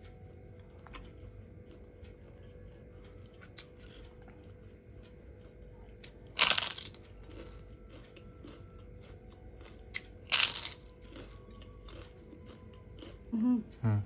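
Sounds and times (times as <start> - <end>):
chewing clicks: 0.6 - 13.3
crunching bites into crispy food: 6.0 - 8.7, 9.6 - 13.1.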